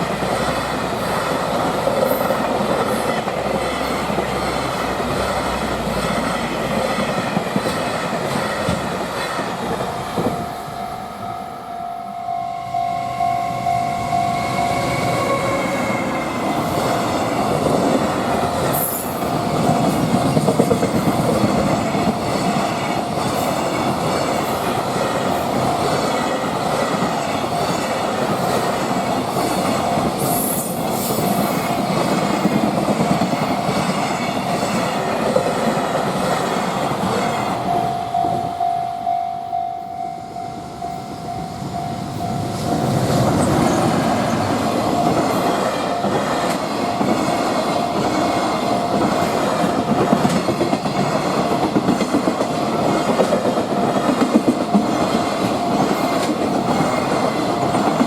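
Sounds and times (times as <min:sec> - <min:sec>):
freight train wheels clattering: 0:00.0 - 0:10.8, 0:14.3 - 0:38.7, 0:41.2 - 0:58.0
train wheel squeal: 0:02.0 - 0:05.6, 0:12.2 - 0:17.1, 0:18.5 - 0:24.6, 0:27.0 - 0:32.0, 0:39.6 - 0:51.2
level crossing bell ringing: 0:10.4 - 0:17.2, 0:37.5 - 0:49.2.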